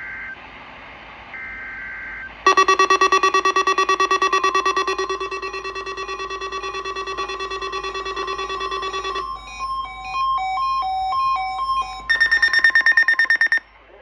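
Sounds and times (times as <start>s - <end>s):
pulsing electronic alert tone: 2.5s - 13.6s
stepped electronic beeps: 2.5s - 13.6s.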